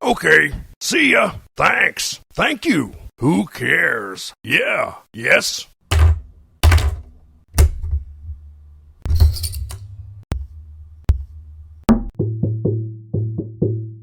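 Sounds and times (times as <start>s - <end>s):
percussive tune: 10.3s - 13.5s.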